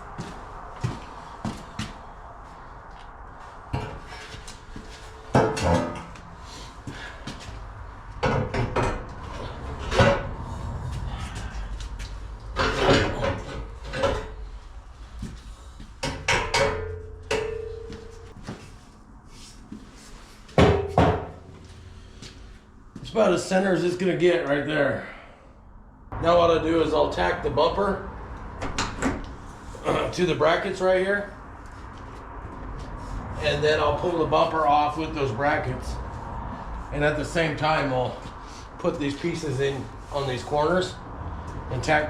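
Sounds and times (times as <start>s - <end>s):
steel bumper clanking on brackets: 5.2s - 6.4s, 12.6s - 14.6s, 16.0s - 18.4s.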